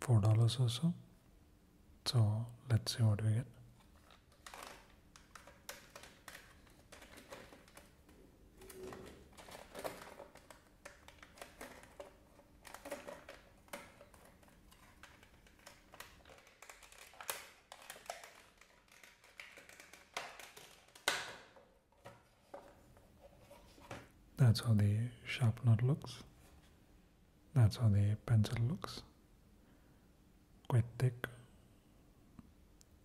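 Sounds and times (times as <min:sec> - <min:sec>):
packaging scraping and rustling: 0:03.8 - 0:21.0
pencils clicking together: 0:08.6 - 0:21.5.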